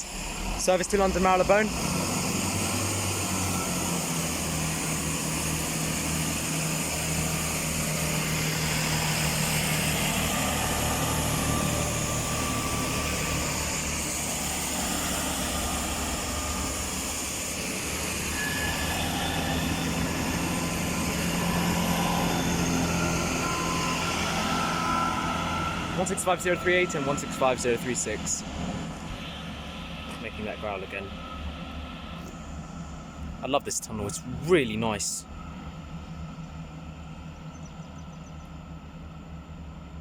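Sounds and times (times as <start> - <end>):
diesel train engines growling: 0.0 - 40.0.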